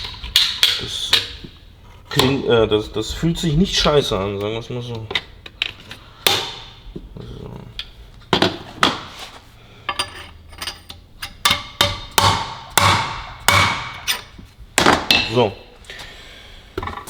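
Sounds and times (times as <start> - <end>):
sharp metallic knocks: 11.2 - 15.4.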